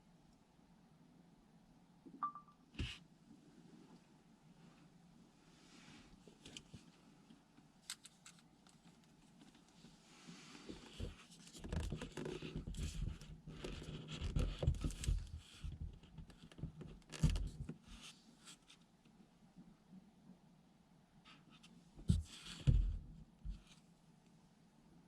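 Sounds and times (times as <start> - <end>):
rustling and scraping: 7.8 - 18.8.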